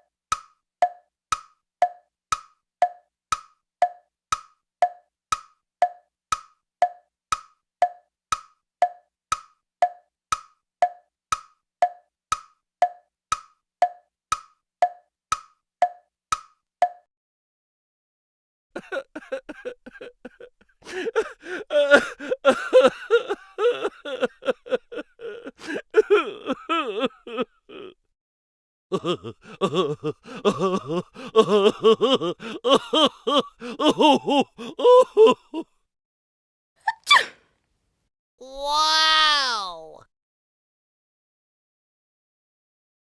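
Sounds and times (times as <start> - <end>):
fast high-pitched vocal bursts: 38.4 - 40.0.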